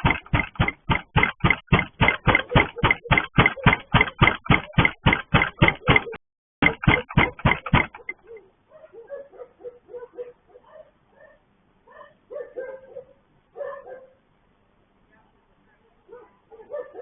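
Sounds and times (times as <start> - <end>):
rapid banging on a gate: 0.0 - 8.4.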